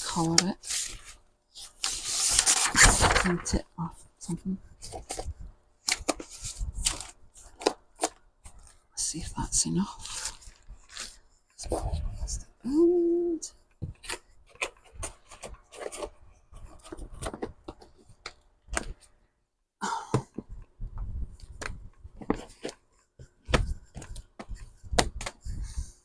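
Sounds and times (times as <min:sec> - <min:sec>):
paper rustling: 0:00.1 - 0:03.6, 0:14.0 - 0:18.0.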